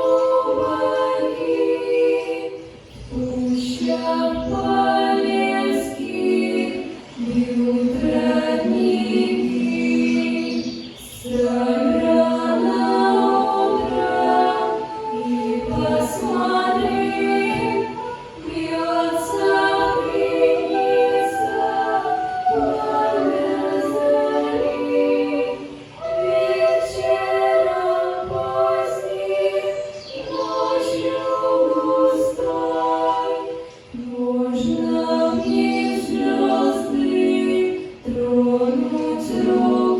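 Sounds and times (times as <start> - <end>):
vocal ensemble singing in harmony: 0.0 - 39.9.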